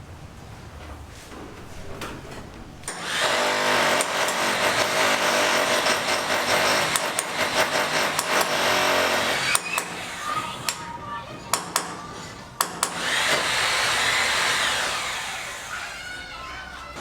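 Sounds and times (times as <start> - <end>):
power tool grinding: 2.9 - 10.7, 12.8 - 15.7.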